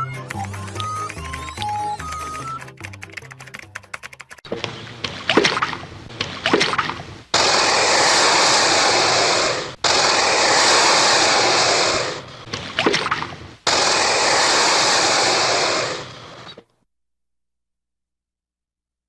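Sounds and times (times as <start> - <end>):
alligator hissing: 7.3 - 12.5, 13.6 - 16.6.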